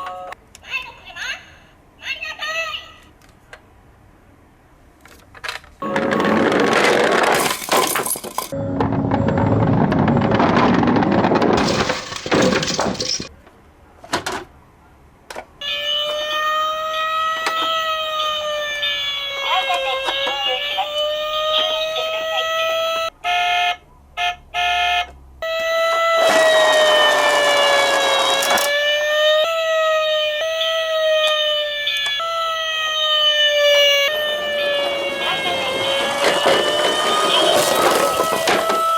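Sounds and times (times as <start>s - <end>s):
clattering noise: 5.2s - 13.3s, 36.0s - 38.9s
emergency vehicle siren wailing: 15.6s - 23.8s, 24.6s - 38.9s.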